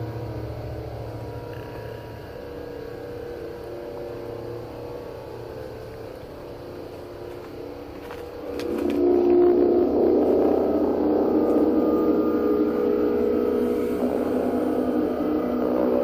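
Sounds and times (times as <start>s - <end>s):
low droning hum: 0.0s - 16.0s.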